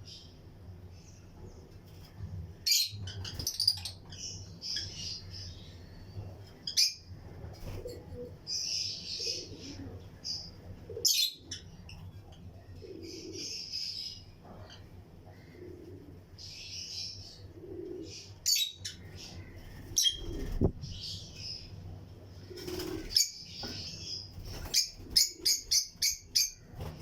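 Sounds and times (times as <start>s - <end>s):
lovebirds chirping: 16.4s - 21.8s, 22.6s - 26.8s.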